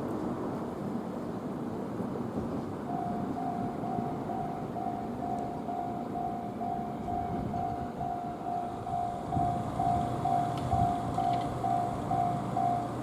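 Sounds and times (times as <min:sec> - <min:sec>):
level crossing bell dinging: 0:02.9 - 0:13.0.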